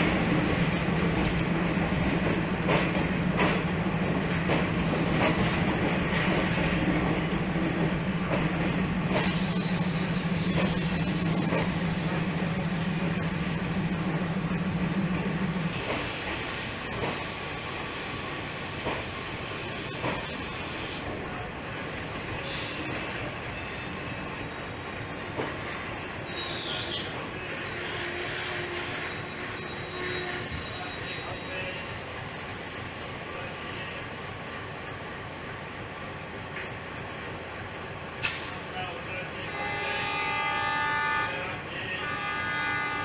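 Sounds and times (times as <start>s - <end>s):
train wheels clicking over rail joints: 0.0s - 21.2s, 38.1s - 38.7s
train low hum: 0.0s - 43.0s.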